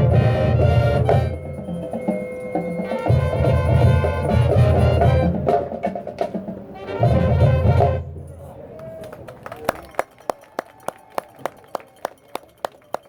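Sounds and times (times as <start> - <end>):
marching band playing: 0.0 - 8.2
sharp percussion strikes: 0.7 - 5.0.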